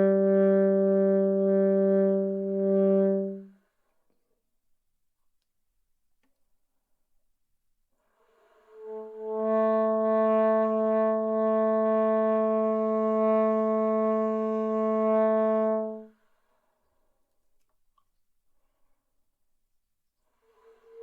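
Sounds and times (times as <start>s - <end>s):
saxophone long held note: 0.0s - 3.5s, 8.8s - 16.1s.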